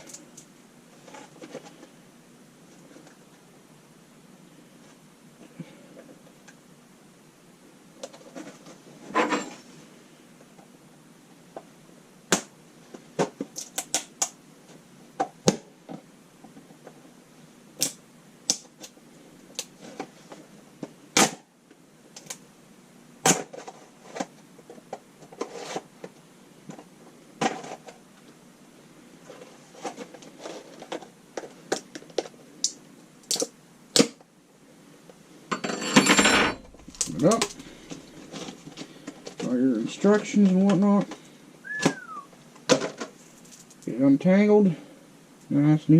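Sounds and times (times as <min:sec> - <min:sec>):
packaging rustling: 0:36.6 - 0:39.0.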